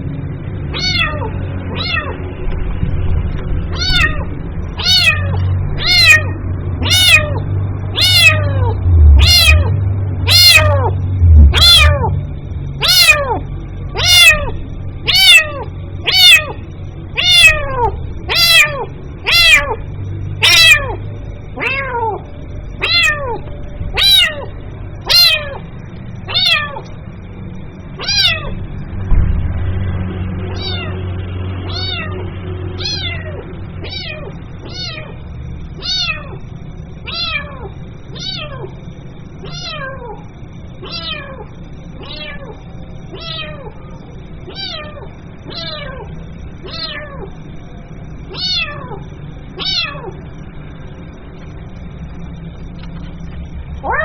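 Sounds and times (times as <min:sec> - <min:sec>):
kitten meowing: 0:00.7 - 0:02.2, 0:03.7 - 0:12.2, 0:12.8 - 0:25.7, 0:26.3 - 0:26.9, 0:28.0 - 0:28.6, 0:30.5 - 0:31.0, 0:31.6 - 0:32.2, 0:32.8 - 0:35.2, 0:35.8 - 0:38.8, 0:39.4 - 0:47.4, 0:48.3 - 0:50.2.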